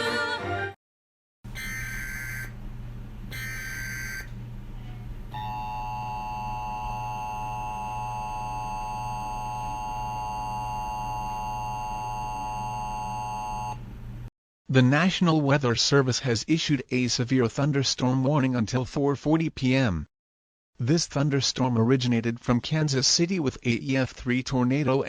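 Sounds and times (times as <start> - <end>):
two-tone attention signal: 1.5 - 2.5, 3.3 - 4.3, 5.4 - 13.8
low steady hum: 1.5 - 14.3
data tone bursts: 3.3 - 4.3, 5.4 - 13.8.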